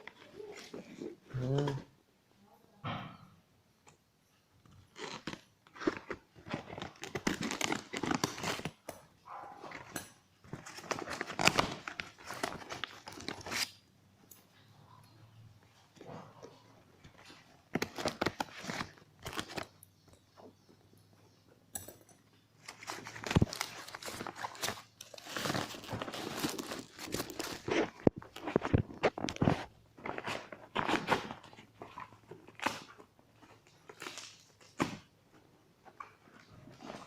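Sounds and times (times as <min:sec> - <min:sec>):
plastic packaging crinkling and tearing: 0:04.6 - 0:08.9, 0:09.6 - 0:13.8, 0:17.1 - 0:19.8, 0:22.6 - 0:35.1.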